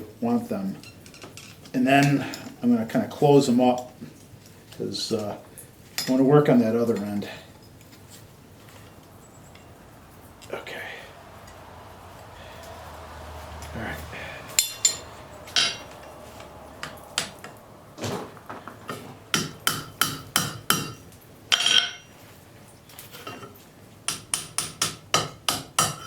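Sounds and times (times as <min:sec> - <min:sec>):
hammer striking metal on anvil: 0:14.6 - 0:16.0, 0:19.3 - 0:21.0, 0:24.1 - 0:26.0.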